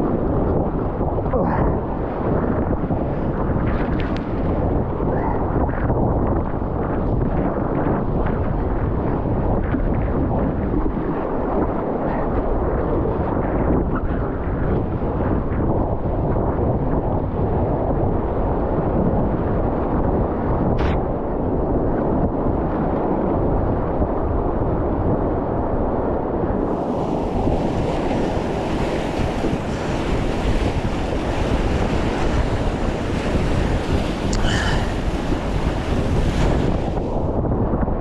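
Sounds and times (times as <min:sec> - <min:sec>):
wind buffeting microphone: 0:00.0 - 0:38.0
whitewater rushing: 0:26.7 - 0:37.2.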